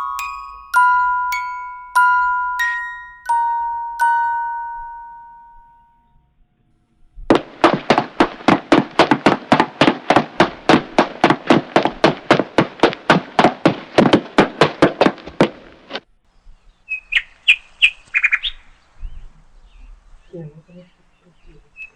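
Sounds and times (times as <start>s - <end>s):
bright chime notes: 0.0s - 6.1s
fast sharp knocks: 7.3s - 16.0s.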